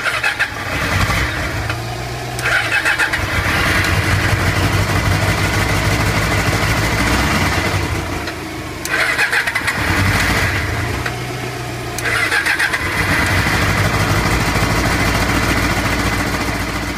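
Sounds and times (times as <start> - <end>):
motorcycle engine running unevenly: 0.0 - 16.9.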